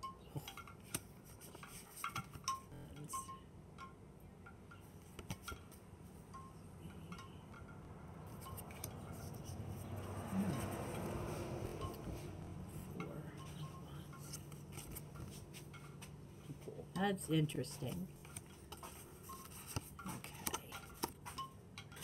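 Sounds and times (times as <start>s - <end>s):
cards clicking and tapping: 18.2s - 21.4s.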